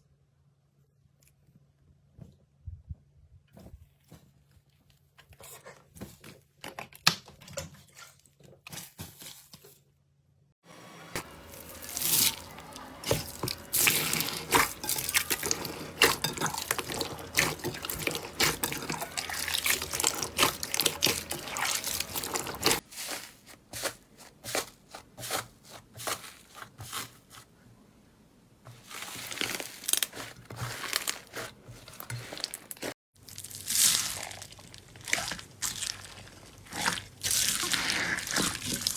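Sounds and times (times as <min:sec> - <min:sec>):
slime squeezed wet crackles: 0:32.2 - 0:38.9.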